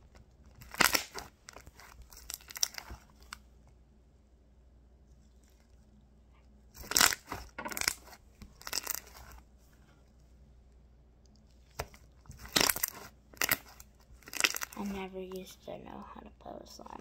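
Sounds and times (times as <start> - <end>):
slime squelching and popping: 0.0 - 3.4, 6.7 - 9.4, 11.7 - 15.0.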